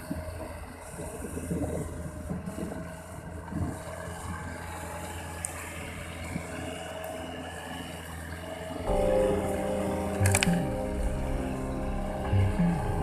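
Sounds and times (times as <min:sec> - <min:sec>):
wind buffeting microphone: 0:00.0 - 0:04.7
engine humming: 0:04.1 - 0:13.0
sharp click: 0:10.2 - 0:10.6.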